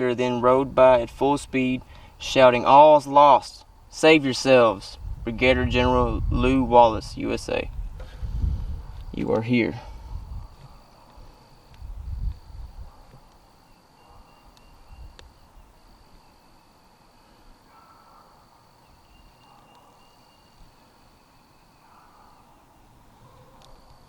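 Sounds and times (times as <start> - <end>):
insects trilling high-pitched: 0.0 - 24.0
low rumbles on microphone: 4.9 - 10.6, 11.8 - 13.0
fainter insect trill: 8.9 - 24.0.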